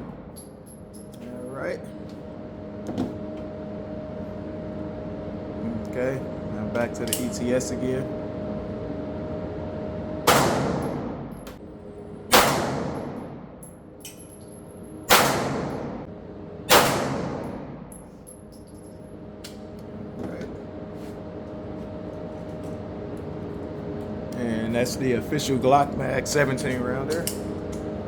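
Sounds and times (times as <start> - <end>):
pistol shots ringing: 12.3 - 13.3, 15.1 - 16.0, 16.7 - 17.7.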